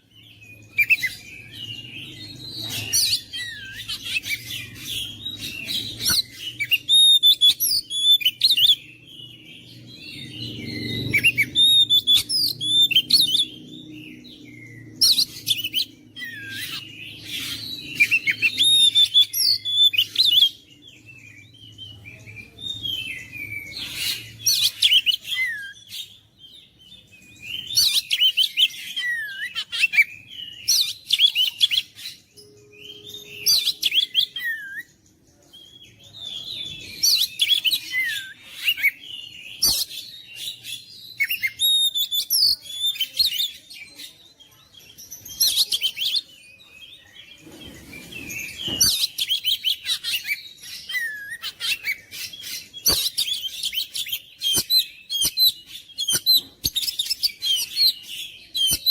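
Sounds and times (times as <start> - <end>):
bird singing whistles and chirps: 0.0 - 44.2, 44.8 - 58.9.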